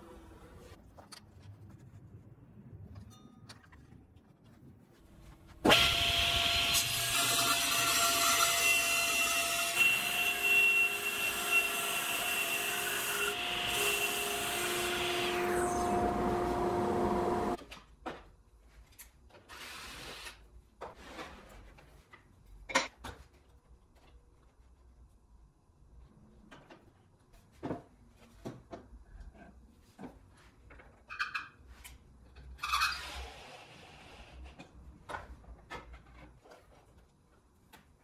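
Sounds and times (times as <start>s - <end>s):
table saw cutting wood: 5.7s - 17.6s.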